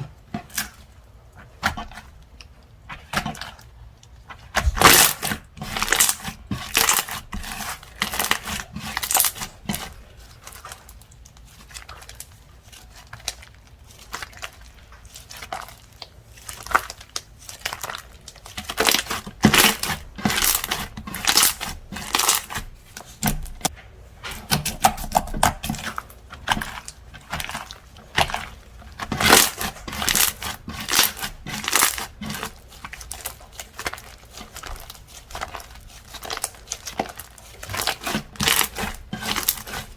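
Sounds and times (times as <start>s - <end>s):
slime crackling and popping: 4.3s - 23.7s, 24.4s - 39.9s.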